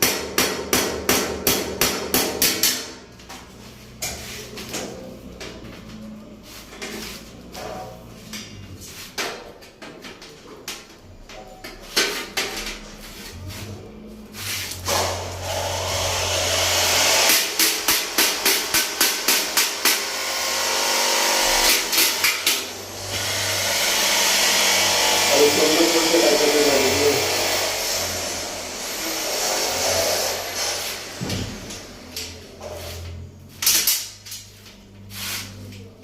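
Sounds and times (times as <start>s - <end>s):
machine noise with regular taps: 14.8s - 23.5s.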